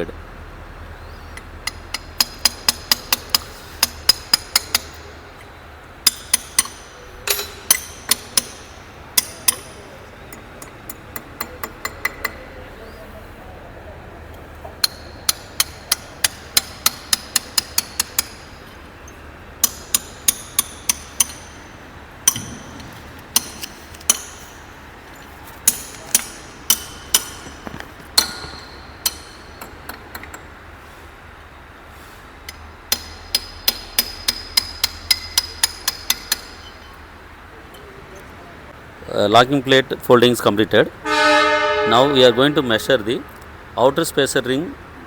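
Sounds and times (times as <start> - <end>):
hammer striking metal: 1.6 - 5.2, 6.0 - 12.4, 14.8 - 18.8, 19.6 - 24.8, 25.6 - 30.4, 32.5 - 37.0.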